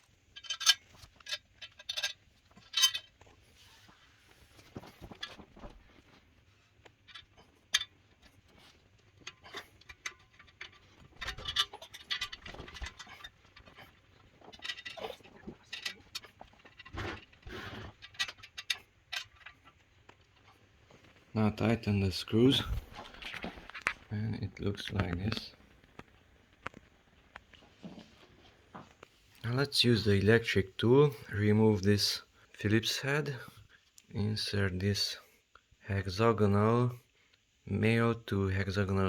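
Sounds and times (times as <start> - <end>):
metal screws and bars clicking: 0.3 - 3.2, 9.2 - 19.7.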